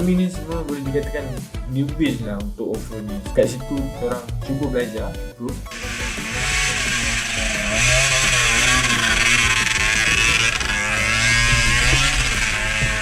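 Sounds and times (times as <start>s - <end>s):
dirt bike engine revving: 5.7s - 13.0s.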